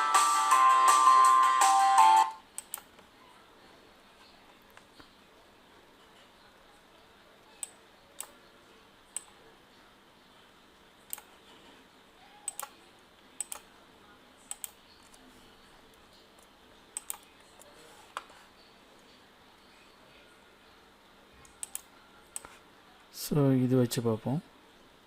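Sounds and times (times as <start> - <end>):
faint room hiss: 0.0 - 25.0
mouse and keyboard clicks: 2.6 - 3.0, 13.4 - 13.7, 14.5 - 15.2, 17.0 - 18.3, 21.4 - 22.6.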